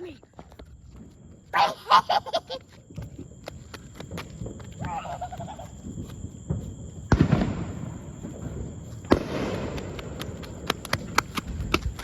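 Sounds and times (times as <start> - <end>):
fireworks crackling pops: 2.8 - 12.0
fireworks bangs with rumbling: 4.1 - 12.0.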